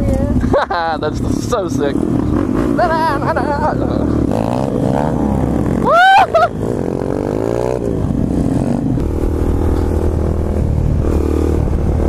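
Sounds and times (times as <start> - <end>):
motorcycle engines running: 0.0 - 12.0
short loud whoop: 5.8 - 6.5
wind rumble on microphone: 7.8 - 12.0.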